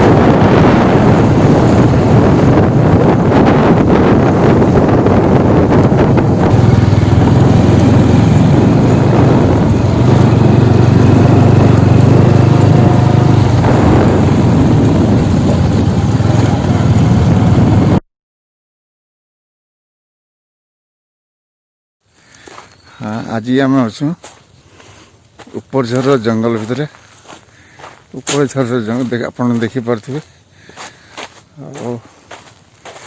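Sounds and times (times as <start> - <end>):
vehicle engine hum: 0.0 - 18.0.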